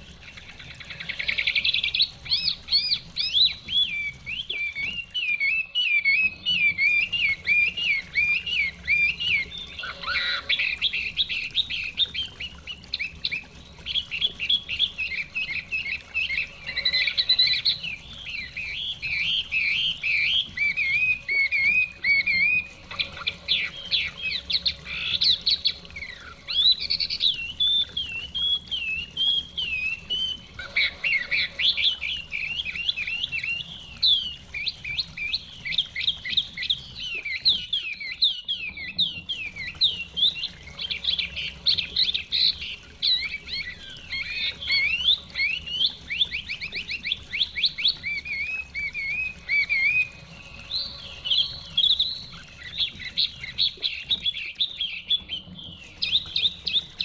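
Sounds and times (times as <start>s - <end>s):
bird singing warbled phrases: 0.0s - 57.0s.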